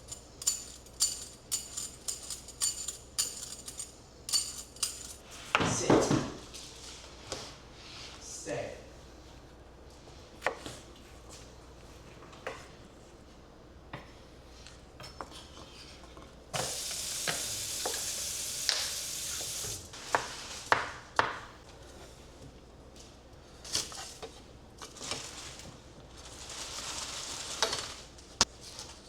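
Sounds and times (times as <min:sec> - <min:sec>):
steady hiss: 0:16.6 - 0:20.0.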